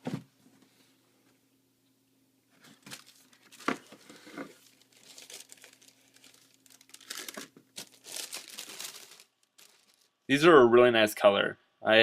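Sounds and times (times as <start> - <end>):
paper crinkling and rustling: 2.6 - 10.2.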